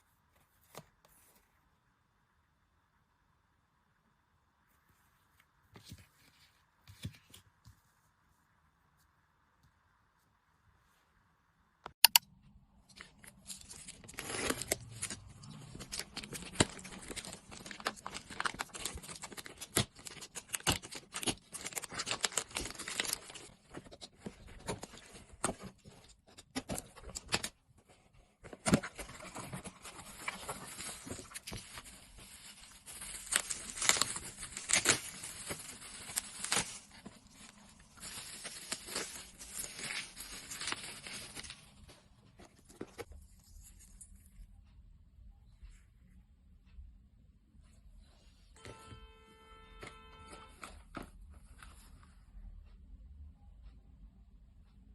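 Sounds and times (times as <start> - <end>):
packaging tearing and crinkling: 13.2 - 23.8, 29.2 - 37.1, 38.0 - 41.6.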